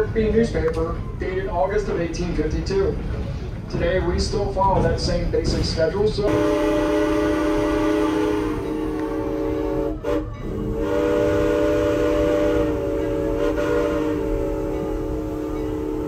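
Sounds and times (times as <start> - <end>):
moving train rumble: 0.0 - 16.0
steam locomotive chime whistle: 6.2 - 16.0.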